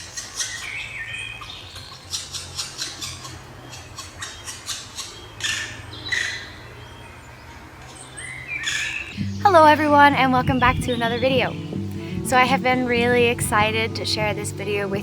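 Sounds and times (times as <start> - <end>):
bird calling harsh notes: 7.9 - 15.0.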